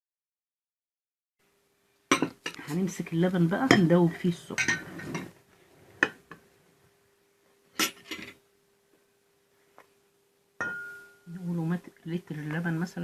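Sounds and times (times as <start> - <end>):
faint steady hum: 1.4 - 13.0
spoon clinking against a dish: 10.6 - 11.3.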